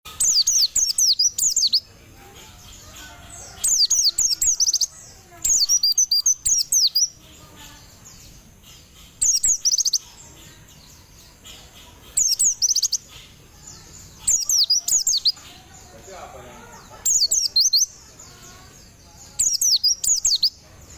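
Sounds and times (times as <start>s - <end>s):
bird singing high chirping notes: 0.1s - 1.9s, 2.6s - 16.1s, 17.0s - 20.6s.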